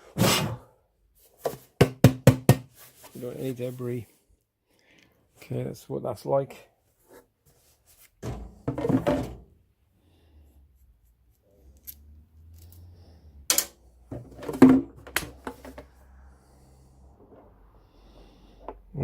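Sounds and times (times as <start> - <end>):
plastic tank knocking and clattering: 8.2 - 9.5, 14.1 - 15.8.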